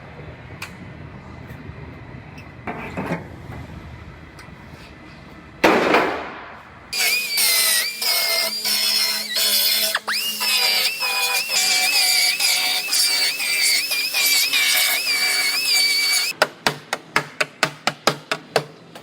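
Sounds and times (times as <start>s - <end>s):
music with gliding whistle tones: 7.0s - 16.3s.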